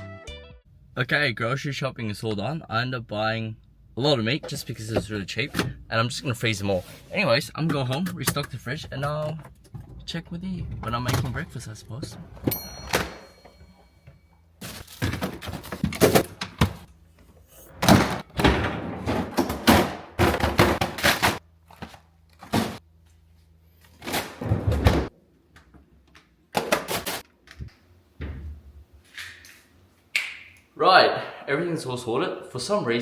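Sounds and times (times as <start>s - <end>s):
doors opening and shutting: 17.5s - 21.4s.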